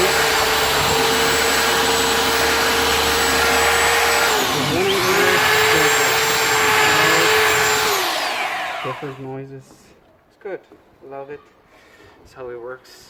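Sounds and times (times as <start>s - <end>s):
belt sander whining: 0.0s - 9.2s.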